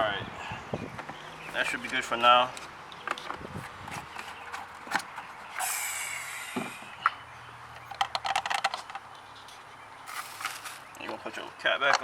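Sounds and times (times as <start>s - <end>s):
short hiss: 5.6s - 6.9s
oil container clicks and knocks: 7.8s - 9.1s.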